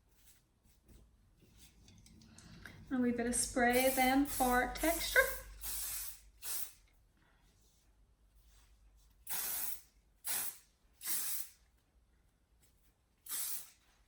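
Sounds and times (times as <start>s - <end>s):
hair spray hissing bursts: 3.5s - 6.8s, 9.3s - 11.6s, 13.2s - 13.8s.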